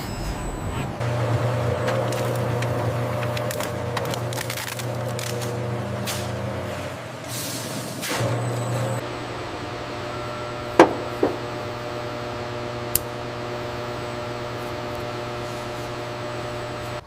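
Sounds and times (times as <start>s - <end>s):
machine hum: 0.0s - 17.0s
sharp knocks: 10.8s - 11.4s.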